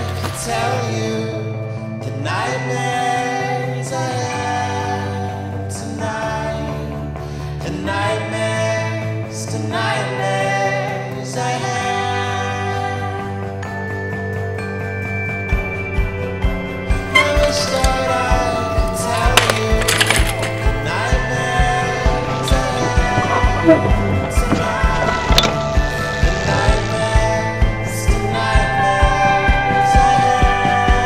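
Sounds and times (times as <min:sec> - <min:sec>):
low bass notes: 0:16.1 - 0:31.0
person singing: 0:17.1 - 0:31.0.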